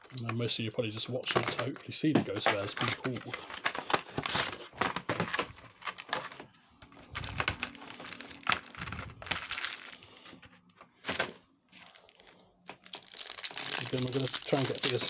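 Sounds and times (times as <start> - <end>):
foil wrapper crinkling and tearing: 2.4 - 10.5, 11.9 - 15.0.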